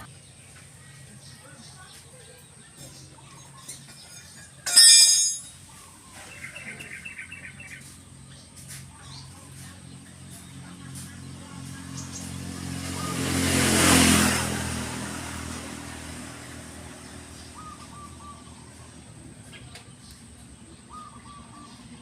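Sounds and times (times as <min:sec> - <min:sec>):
vehicle driving past: 0:10.0 - 0:19.4.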